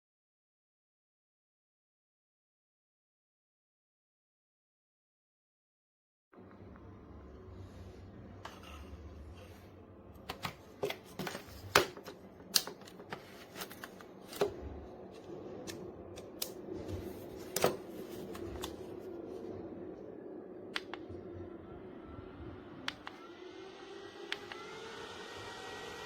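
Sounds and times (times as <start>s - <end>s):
faint steady hum: 6.4s - 26.0s.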